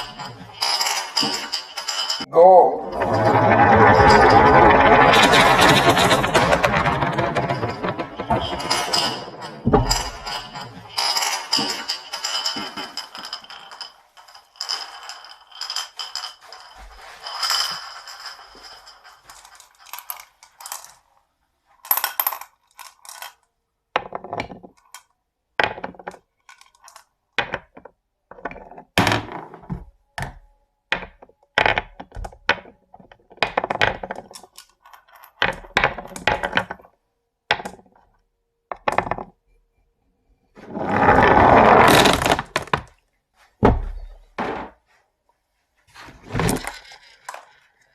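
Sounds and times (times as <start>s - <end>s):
marbles rattling down wooden track: 0.0s - 21.0s, 35.3s - 36.8s, 40.6s - 42.9s.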